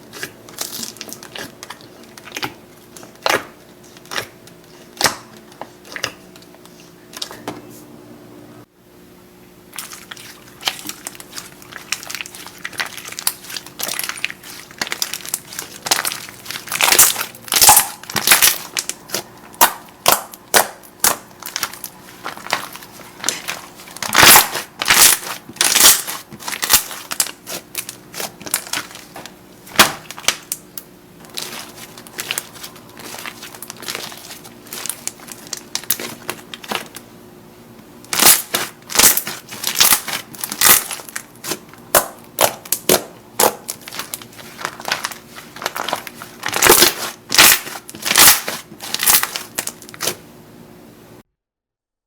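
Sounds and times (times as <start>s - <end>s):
slime crackling and popping: 9.8s - 37.0s, 38.1s - 50.2s.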